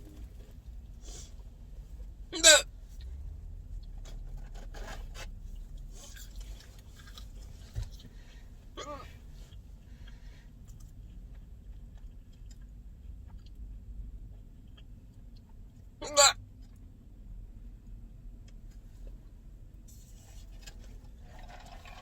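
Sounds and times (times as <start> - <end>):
girl hiccuping: 2.4 - 2.6, 8.8 - 9.2, 16.0 - 16.4
girl chewing crunchy food: 5.6 - 8.1, 8.8 - 15.9.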